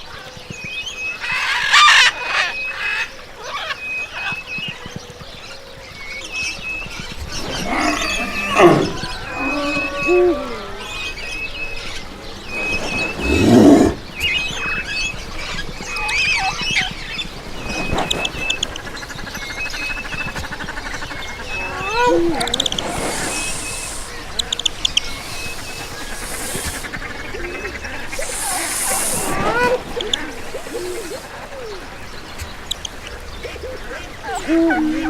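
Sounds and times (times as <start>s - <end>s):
bird chirping: 6.0s - 34.5s
deep animal calls: 7.4s - 11.0s, 12.5s - 14.1s, 21.4s - 31.9s.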